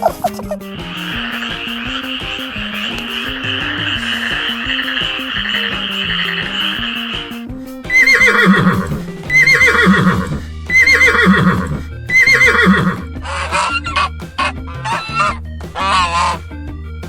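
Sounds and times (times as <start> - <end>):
background music: 0.0 - 17.0
horse whinnying: 7.9 - 14.0.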